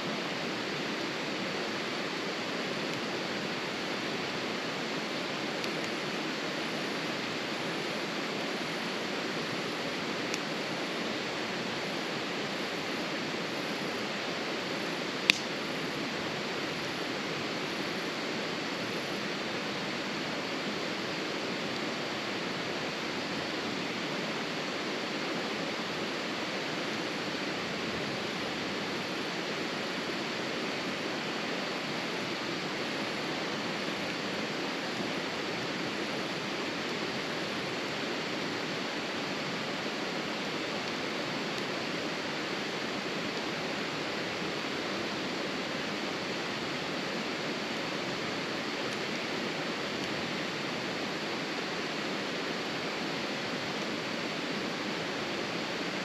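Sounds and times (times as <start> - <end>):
steady rushing noise: 0.0 - 56.0
campfire pop: 15.2 - 15.6
faint tick: 15.3 - 15.5.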